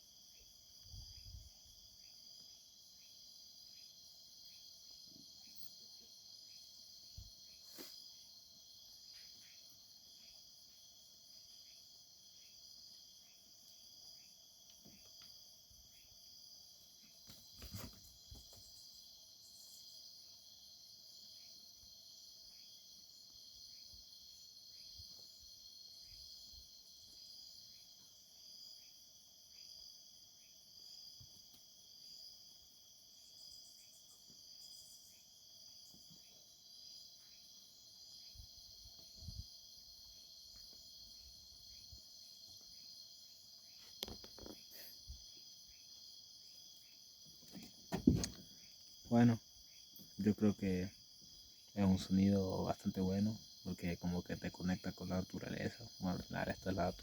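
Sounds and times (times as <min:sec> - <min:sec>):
crickets trilling: 0:00.0 - 0:57.0
short quiet insect chirps: 0:33.1 - 0:50.6
soft knock: 0:47.9 - 0:48.4.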